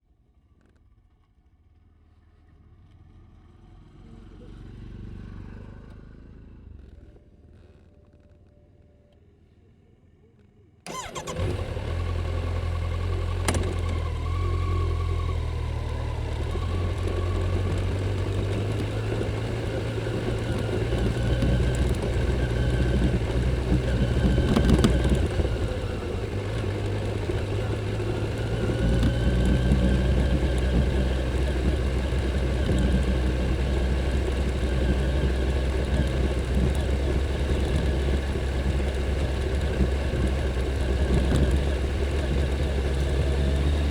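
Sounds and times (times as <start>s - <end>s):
motorcycle engine running: 10.9s - 43.9s.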